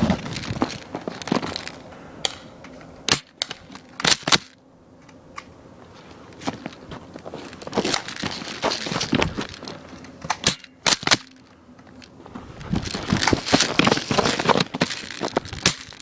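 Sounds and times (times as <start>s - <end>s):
footsteps crunching snow: 5.9s - 10.0s, 12.2s - 16.0s.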